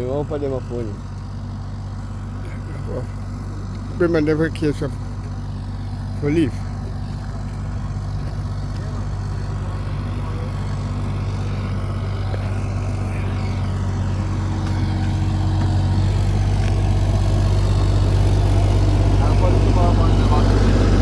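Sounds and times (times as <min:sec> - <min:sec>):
deep low hum: 0:00.0 - 0:21.0
engine running at low revs: 0:00.0 - 0:21.0.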